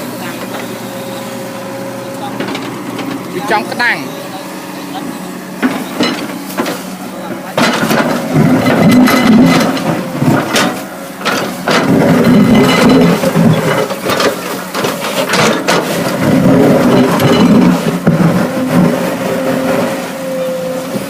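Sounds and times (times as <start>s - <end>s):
excavator diesel engine under load: 0.0s - 21.0s.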